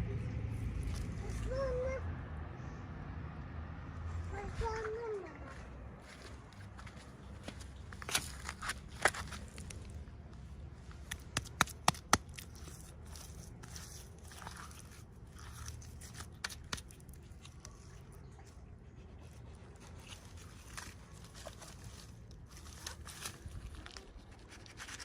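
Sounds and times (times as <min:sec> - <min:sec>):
packaging crinkling and tearing: 0:20.2 - 0:25.0.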